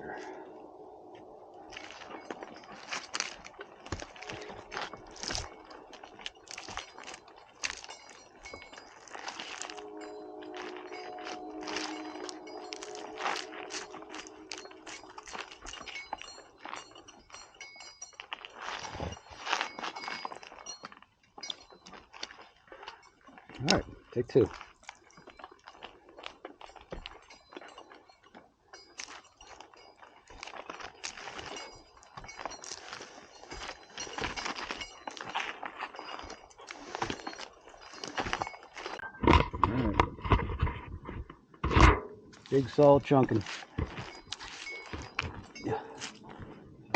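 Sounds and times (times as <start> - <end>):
climbing gear clinking and scraping: 0.0 - 46.9
wavering grinding sound: 7.9 - 17.0
brief high metallic ringing: 9.6 - 15.4.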